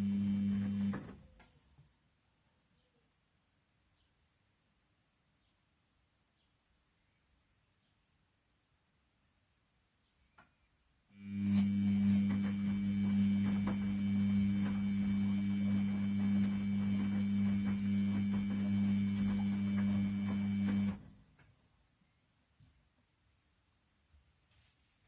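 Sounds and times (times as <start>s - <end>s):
washing machine motor hum: 0.0s - 1.2s, 11.2s - 21.2s.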